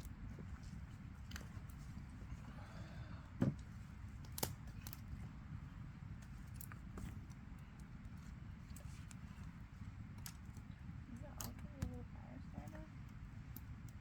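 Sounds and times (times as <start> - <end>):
campfire crackling and popping: 4.1 - 5.2, 6.2 - 14.0.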